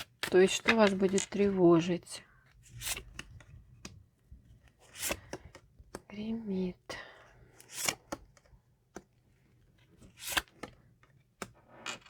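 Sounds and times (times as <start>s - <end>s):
cards sliding swishes: 2.6s - 3.4s, 4.7s - 5.4s, 7.6s - 8.2s, 10.0s - 10.7s.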